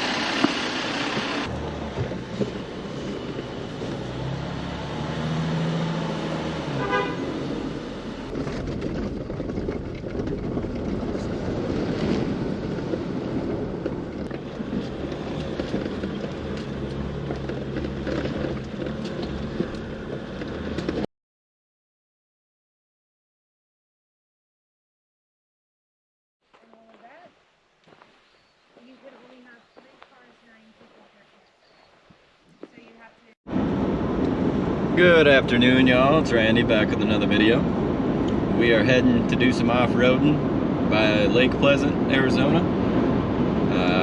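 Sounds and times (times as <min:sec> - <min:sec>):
car engine running at low revs: 0:00.0 - 0:21.1, 0:33.5 - 0:44.0.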